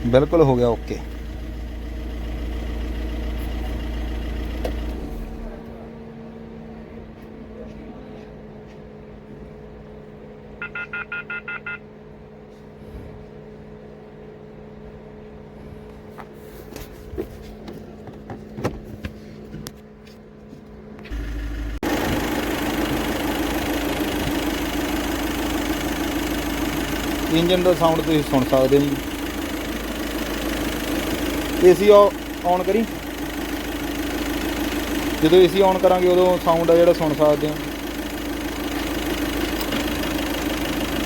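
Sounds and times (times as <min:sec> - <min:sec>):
diesel engine idling: 0:00.0 - 0:41.0
short electronic beeps: 0:10.6 - 0:11.8.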